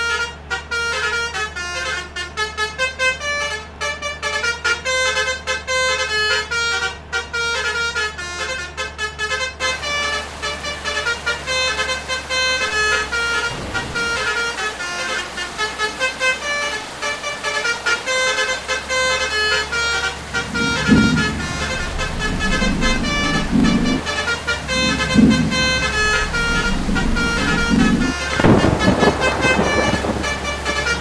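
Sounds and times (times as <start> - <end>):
musical air horn melody: 0.0 - 31.0
steady low hum: 18.8 - 31.0.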